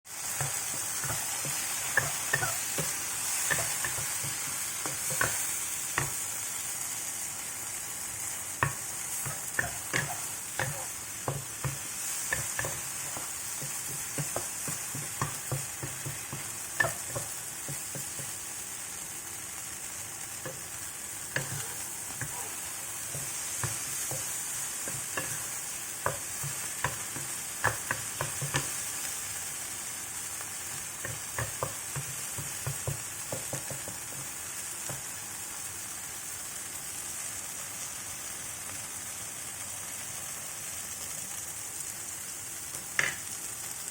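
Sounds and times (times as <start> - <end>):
food sizzling in a pan: 0.0 - 43.9
utensil knocking against pan: 31.0 - 35.0.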